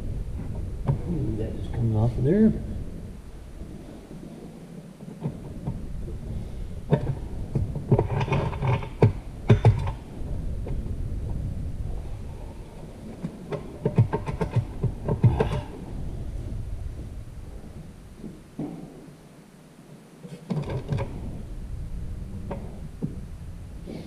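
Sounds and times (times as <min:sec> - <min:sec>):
low steady rumble: 0:00.0 - 0:24.0.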